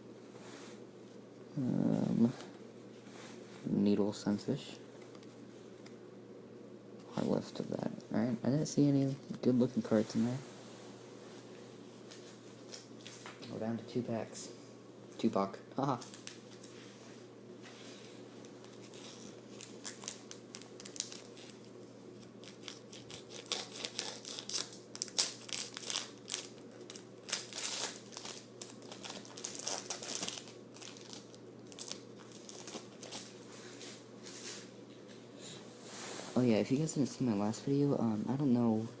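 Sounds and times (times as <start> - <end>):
faint steady hum: 0.0 - 39.0
foil wrapper crinkling and tearing: 18.6 - 33.3.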